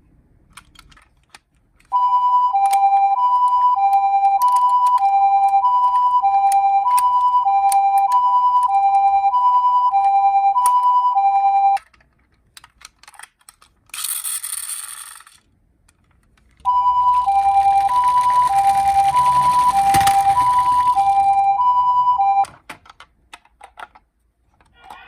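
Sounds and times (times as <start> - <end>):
toy siren two-note hi-lo: 2.0 - 11.8, 16.7 - 22.5.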